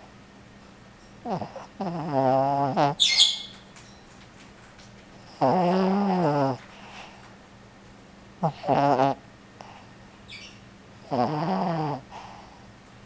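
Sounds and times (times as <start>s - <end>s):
person snoring: 5.3s - 6.6s, 11.1s - 12.5s.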